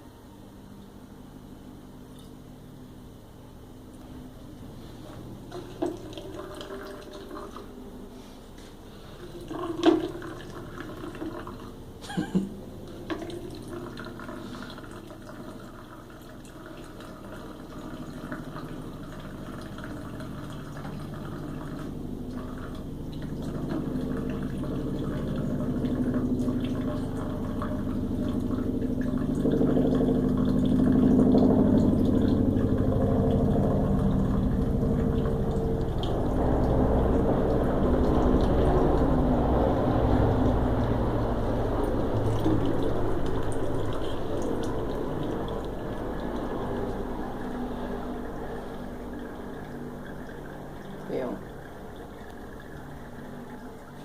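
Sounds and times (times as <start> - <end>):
tap water into washbasin: 9.4 - 11.5.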